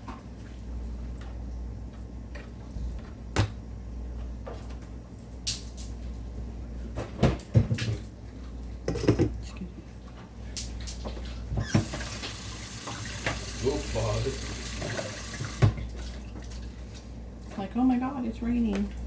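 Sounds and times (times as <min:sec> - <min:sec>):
low steady hum: 0:07.9 - 0:19.0
kitchen knocks and clicks: 0:08.9 - 0:09.4.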